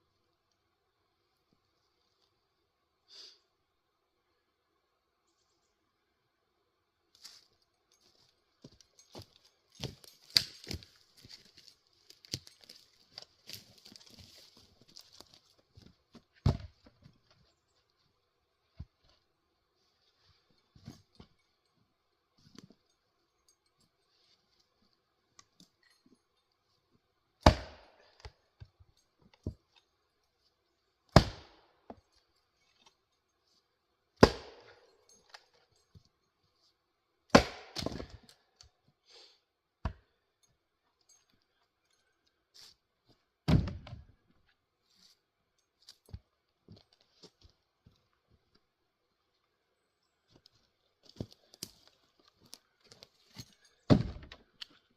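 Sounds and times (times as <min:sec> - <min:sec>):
axe chopping firewood: 0:09.8 - 0:10.8, 0:16.4 - 0:16.8, 0:27.4 - 0:28.4, 0:31.1 - 0:32.0, 0:34.2 - 0:34.8, 0:37.3 - 0:38.2, 0:39.8 - 0:40.1, 0:43.4 - 0:44.0, 0:53.9 - 0:54.4.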